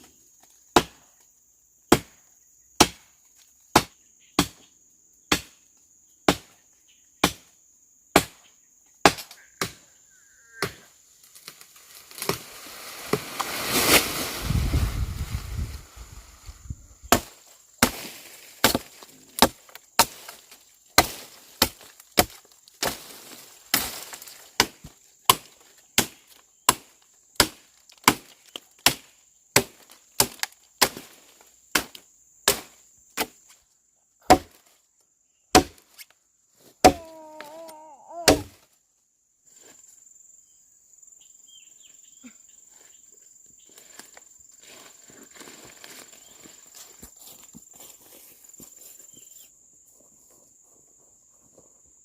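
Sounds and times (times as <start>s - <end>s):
wood being chopped: 0.8s - 1.0s, 1.9s - 2.2s, 2.8s - 3.1s, 3.7s - 4.6s, 5.3s - 5.6s, 6.3s - 6.5s, 8.1s - 8.4s, 9.0s - 9.8s, 17.0s - 20.4s, 21.0s - 23.1s, 23.7s - 33.4s, 34.2s - 34.6s, 35.5s - 36.0s, 36.8s - 38.6s.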